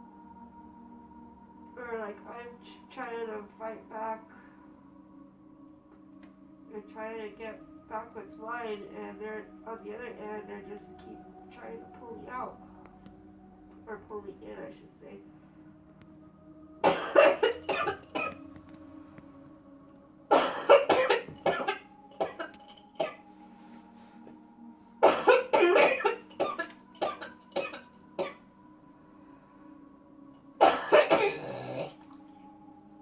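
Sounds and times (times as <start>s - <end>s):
person coughing: 16.8s - 18.4s, 20.3s - 23.2s, 25.0s - 28.4s, 30.6s - 32.0s.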